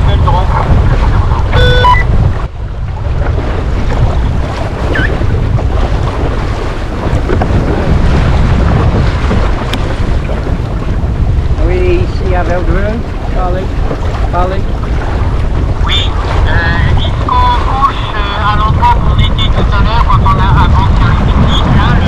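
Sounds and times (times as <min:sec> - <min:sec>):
sea wash: 0:00.0 - 0:22.0
wind buffeting microphone: 0:00.0 - 0:22.0
brief pitched tone: 0:01.5 - 0:02.1, 0:04.9 - 0:05.2.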